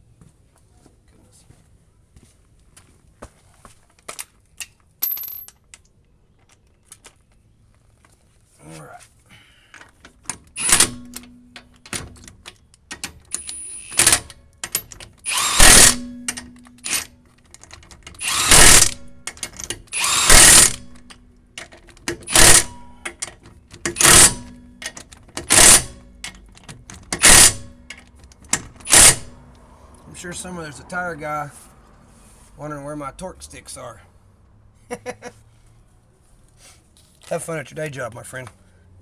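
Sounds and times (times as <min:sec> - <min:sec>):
impact wrench bursts: 0:10.5 - 0:11.3, 0:13.4 - 0:17.1, 0:18.1 - 0:21.2, 0:22.2 - 0:23.2, 0:23.9 - 0:26.3, 0:27.1 - 0:28.0, 0:28.6 - 0:29.4.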